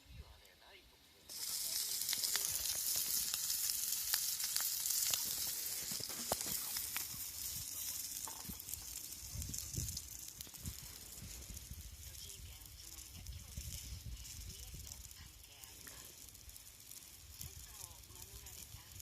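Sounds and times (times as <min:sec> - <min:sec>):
food sizzling in a pan: 0:01.3 - 0:19.0
small pops and crackles: 0:01.3 - 0:19.0.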